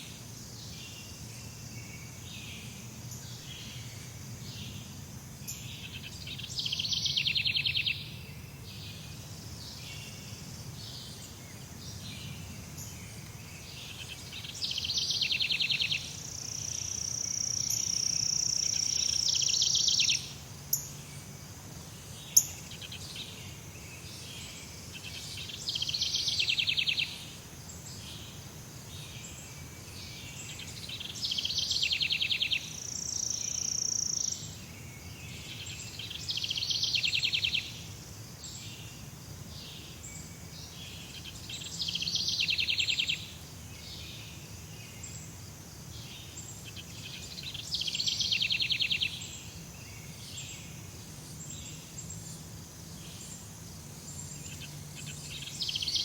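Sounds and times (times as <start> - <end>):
faint steady hum: 0.0 - 56.0
high pulsing insect trill: 12.7 - 23.6.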